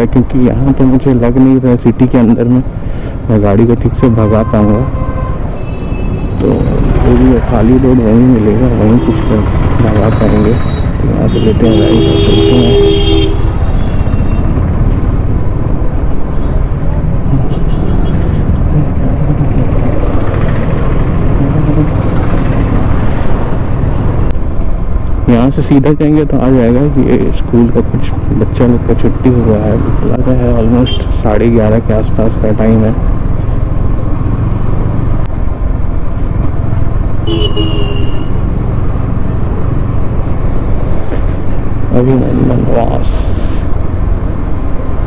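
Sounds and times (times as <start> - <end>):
road and wind noise: 0.0 - 45.0
motorcycle engine running: 6.2 - 24.2.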